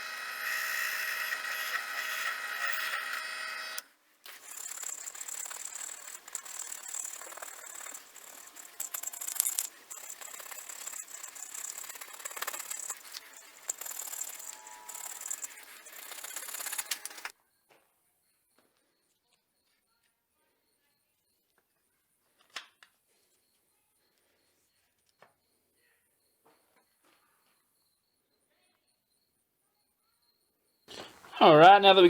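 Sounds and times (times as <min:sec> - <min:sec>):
high-pitched tool whine: 0:00.0 - 0:17.3.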